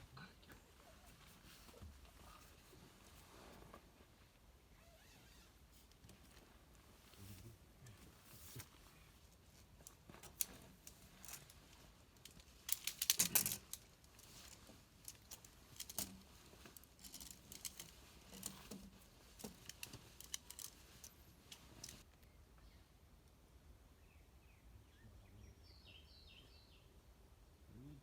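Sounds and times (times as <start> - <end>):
light rustling: 0.4 - 22.1
small clicks of handling: 9.8 - 22.1.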